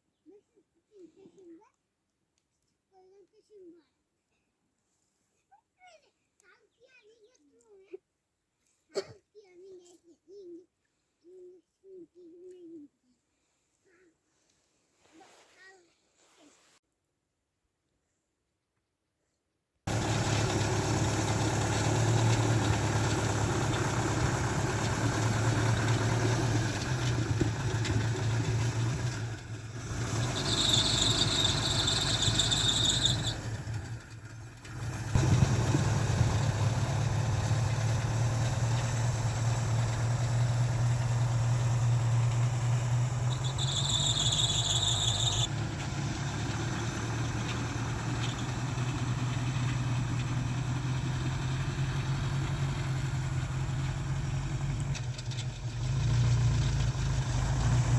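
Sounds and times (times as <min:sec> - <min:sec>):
engine running: 0:19.9 - 0:57.9
high-pitched squeal: 0:29.8 - 0:33.7, 0:42.9 - 0:45.5.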